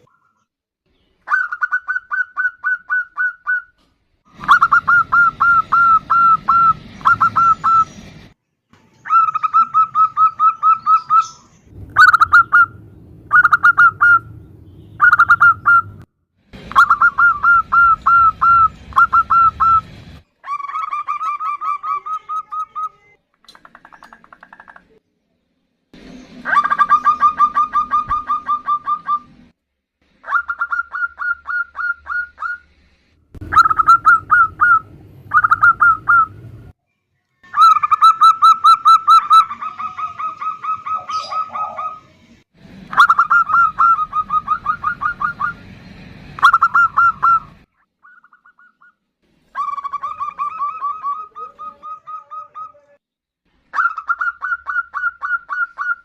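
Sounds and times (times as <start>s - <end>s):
doves calling in trilled bursts: 1.2s - 8.0s, 9.1s - 14.3s, 15.0s - 16.0s, 16.7s - 19.8s, 26.4s - 29.3s, 30.2s - 32.6s, 33.4s - 36.4s, 37.5s - 42.1s, 42.9s - 45.7s, 46.4s - 49.0s, 49.6s - 53.0s, 53.7s - 56.0s.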